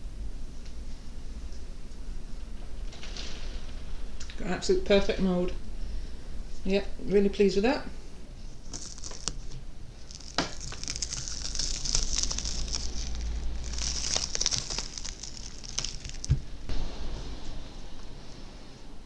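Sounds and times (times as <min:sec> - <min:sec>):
crinkly rustling handling noise: 0:08.0 - 0:16.7.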